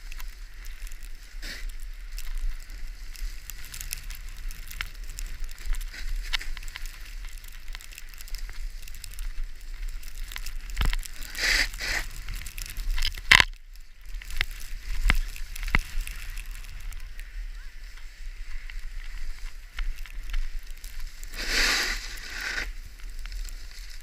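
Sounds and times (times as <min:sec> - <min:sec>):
skis scraping over snow and ice: 0:00.0 - 0:24.0.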